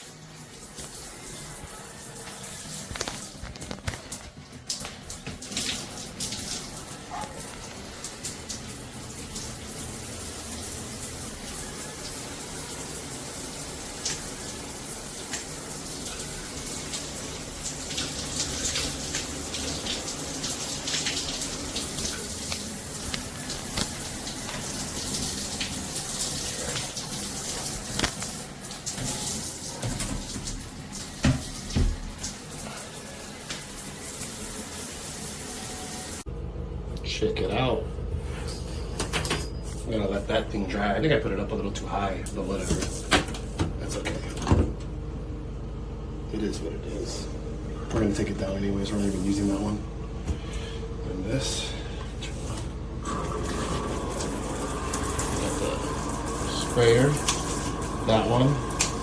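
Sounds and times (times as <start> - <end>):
shower water spraying: 0.0 - 36.3, 52.2 - 59.0.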